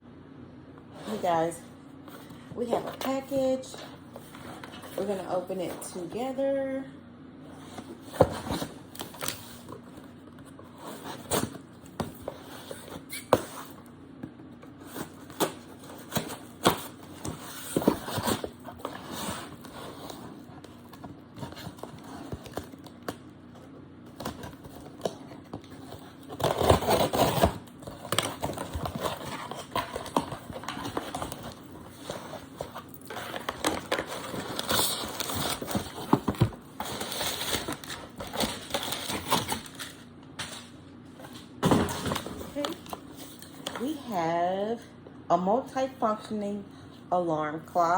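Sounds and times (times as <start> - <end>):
packaging being handled: 24.1 - 40.7.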